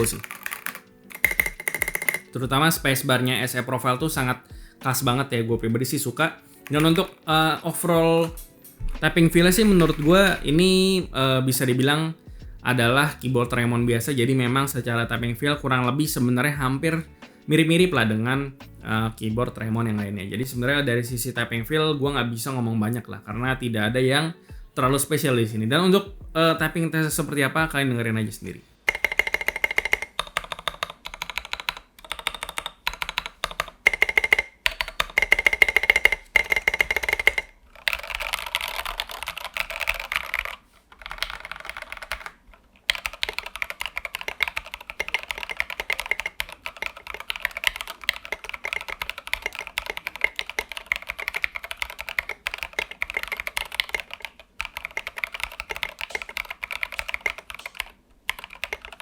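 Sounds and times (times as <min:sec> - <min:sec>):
typing on mechanical keyboard: 0:00.0 - 0:16.6, 0:28.9 - 0:59.0.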